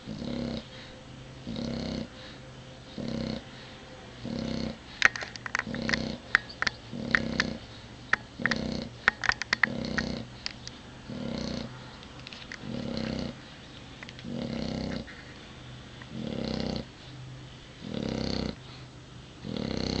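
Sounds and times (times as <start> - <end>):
dog snoring: 0.0 - 3.5, 4.2 - 4.8, 5.6 - 6.2, 6.9 - 7.6, 8.4 - 8.9, 9.6 - 10.3, 11.1 - 11.8, 12.6 - 13.4, 14.2 - 15.2, 16.1 - 16.9, 17.8 - 18.6, 19.4 - 20.0
sharp clicks: 5.0 - 10.8.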